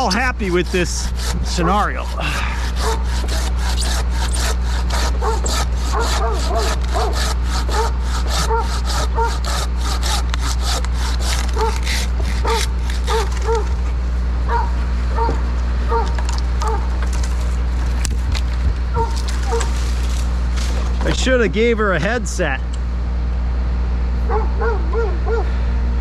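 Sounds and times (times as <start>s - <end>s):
fast rhythmic rasping: 0.0s - 13.7s
steady engine hum: 0.0s - 26.0s
dog barking: 2.8s - 3.1s, 5.2s - 9.4s, 11.6s - 11.8s, 12.4s - 13.7s, 14.5s - 16.9s, 19.0s - 19.8s, 24.3s - 25.5s.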